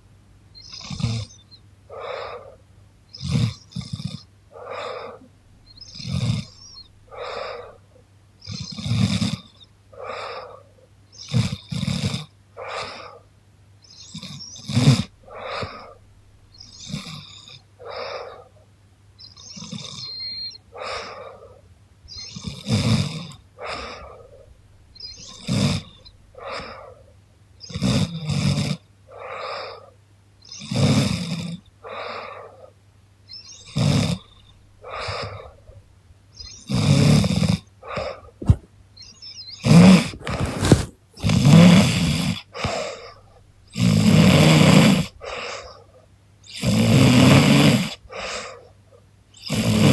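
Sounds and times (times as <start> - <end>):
woman snoring: 39.7 - 42.3.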